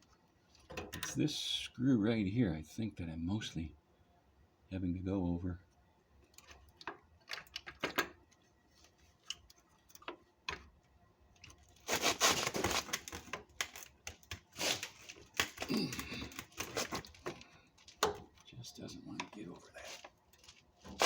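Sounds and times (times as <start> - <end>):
plastic scraping against metal: 11.7 - 15.6, 16.2 - 18.4, 19.2 - 21.0.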